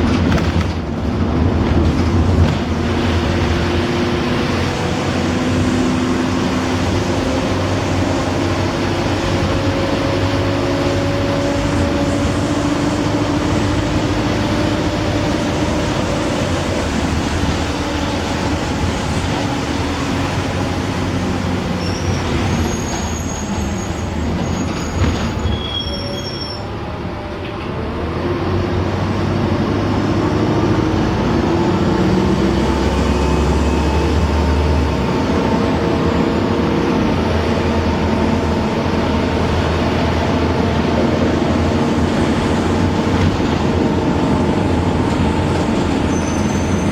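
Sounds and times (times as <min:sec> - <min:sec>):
bus engine whining: 0:00.0 - 0:46.9
brief high squeaks: 0:21.8 - 0:26.8, 0:46.0 - 0:46.9.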